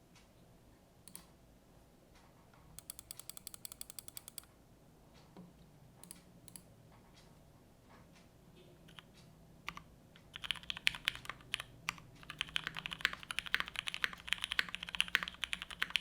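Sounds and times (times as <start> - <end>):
mechanical keyboard typing: 2.8 - 4.5, 10.4 - 16.0.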